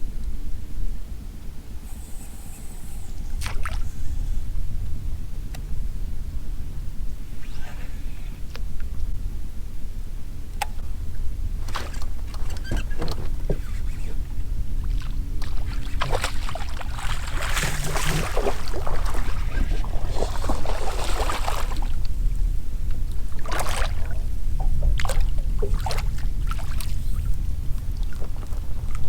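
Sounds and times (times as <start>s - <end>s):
boat engine rumble: 0.0s - 29.0s
hissing splashy water: 15.5s - 22.0s.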